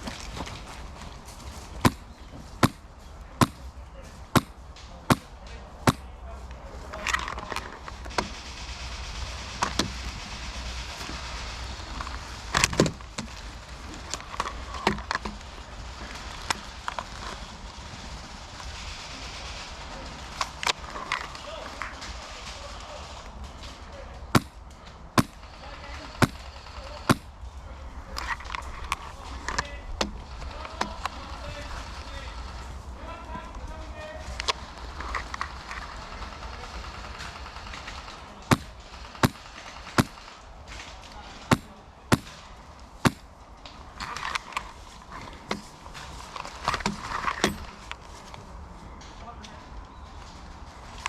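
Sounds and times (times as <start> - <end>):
airsoft gun shots: 2.6 - 3.6, 4.3 - 6.1, 24.3 - 24.6, 25.2 - 25.4, 26.0 - 27.3, 36.5 - 40.3, 41.5 - 42.4, 43.0 - 43.3.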